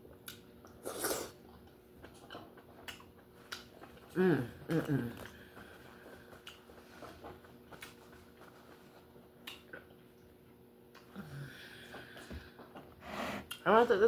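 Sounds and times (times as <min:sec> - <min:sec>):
faint steady hum: 0:00.0 - 0:14.0
chewing mouth clicks and smacks: 0:00.1 - 0:00.8, 0:01.6 - 0:10.3.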